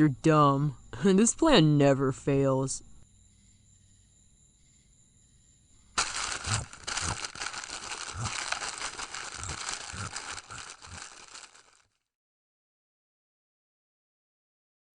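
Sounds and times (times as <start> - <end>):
crinkling rustling: 6.0 - 12.0.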